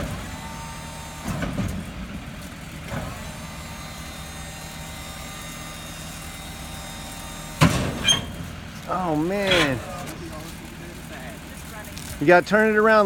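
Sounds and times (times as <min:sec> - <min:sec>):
hydraulic whine: 0:00.0 - 0:10.3
garbage truck idling: 0:00.0 - 0:13.0.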